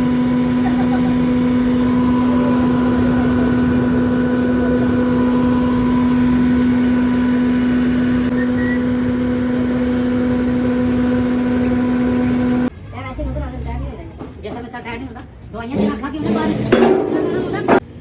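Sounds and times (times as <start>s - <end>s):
machine droning hum and rumble: 0.0s - 12.7s.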